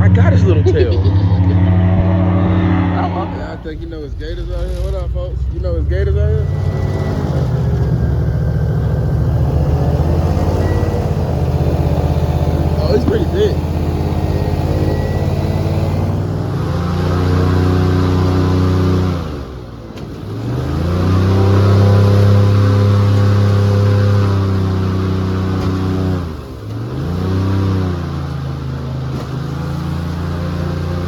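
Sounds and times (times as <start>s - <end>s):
vehicle engine revving: 0.0s - 31.0s.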